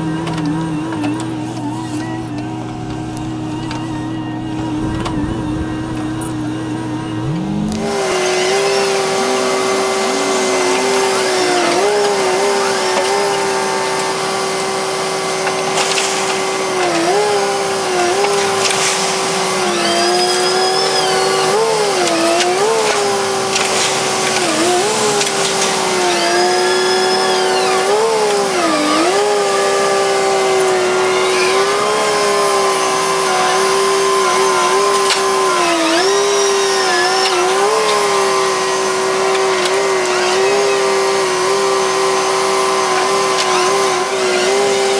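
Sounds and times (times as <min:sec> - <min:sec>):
excavator engine whining: 0:00.0 - 0:44.9.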